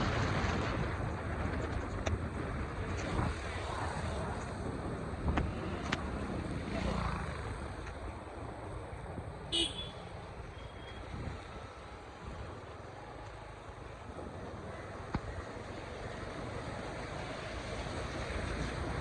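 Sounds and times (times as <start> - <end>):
traffic rumble: 0.0 - 19.0
car horn toot: 9.5 - 10.0.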